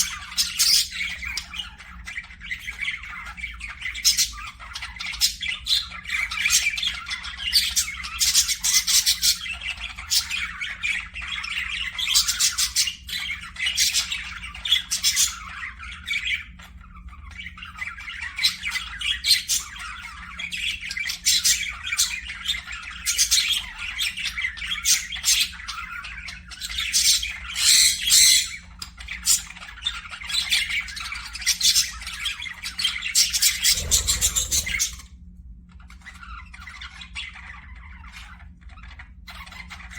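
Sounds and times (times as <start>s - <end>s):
parakeets chattering: 0.0s - 31.6s, 32.9s - 35.1s
faint low hum: 33.3s - 39.6s.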